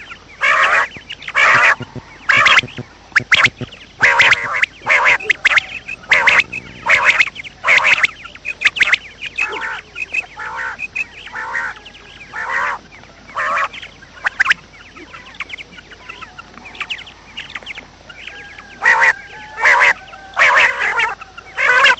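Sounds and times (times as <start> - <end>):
harsh bird calls: 0.0 - 21.9
high chirping: 0.6 - 11.4.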